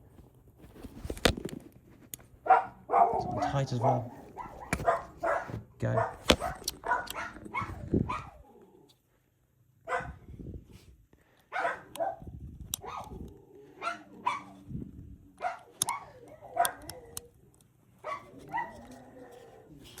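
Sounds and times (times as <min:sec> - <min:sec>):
dog barking: 0:02.4 - 0:08.5, 0:09.8 - 0:10.2, 0:11.5 - 0:14.6, 0:15.4 - 0:17.2, 0:18.0 - 0:20.0.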